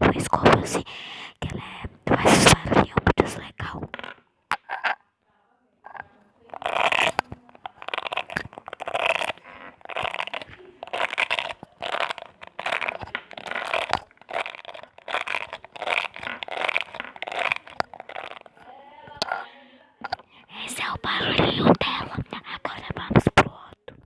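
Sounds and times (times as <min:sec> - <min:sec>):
brush bristles scraping: 0:05.9 - 0:19.4.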